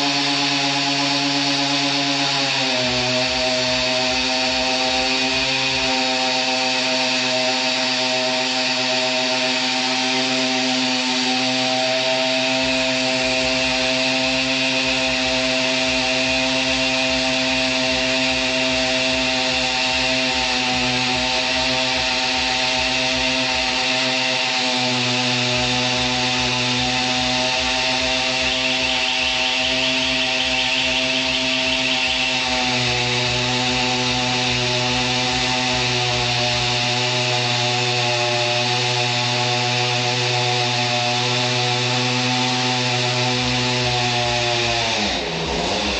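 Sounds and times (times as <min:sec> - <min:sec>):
moped two-stroke engine buzzing: 0:00.0 - 0:45.9.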